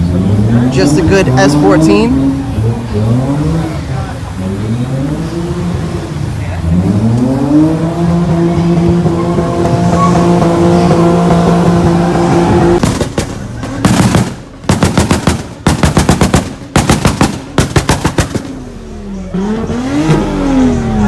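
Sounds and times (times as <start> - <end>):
car engine at high revs: 0.0 - 21.0
exhaust bangs: 0.0 - 21.0.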